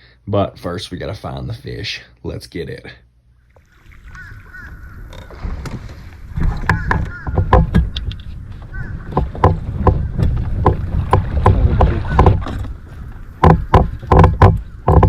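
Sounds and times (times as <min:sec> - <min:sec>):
water slapping kayak hull: 0:03.4 - 0:15.0.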